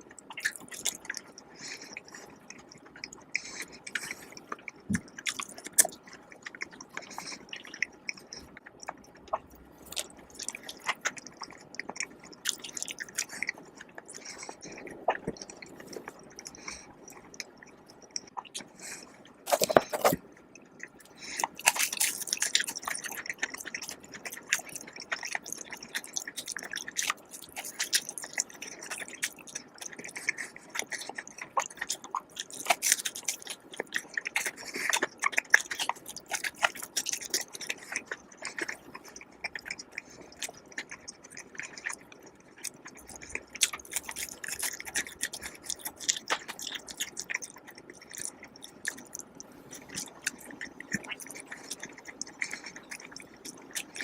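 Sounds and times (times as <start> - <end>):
person chewing food: 0.0 - 54.0.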